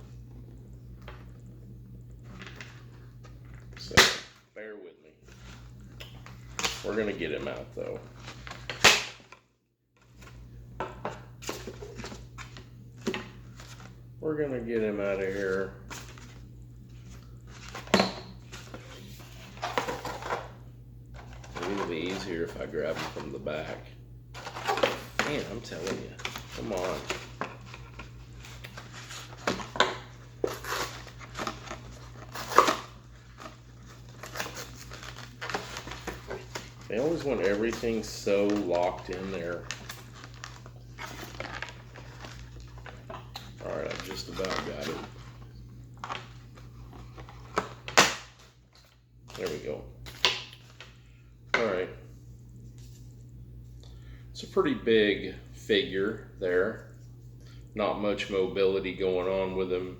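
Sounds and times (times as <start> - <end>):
low electrical hum: 0.0 - 59.9
plastic packaging crinkling: 24.4 - 51.0.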